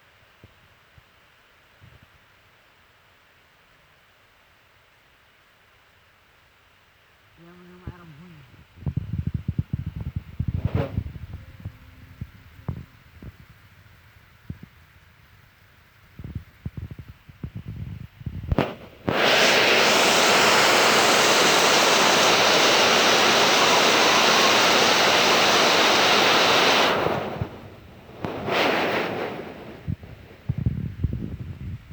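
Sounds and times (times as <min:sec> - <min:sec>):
heavy rain pouring: 0:19.2 - 0:27.7.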